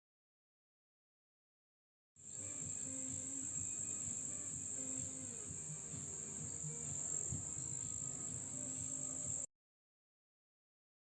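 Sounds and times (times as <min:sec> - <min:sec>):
crickets chirping: 0:02.2 - 0:09.5.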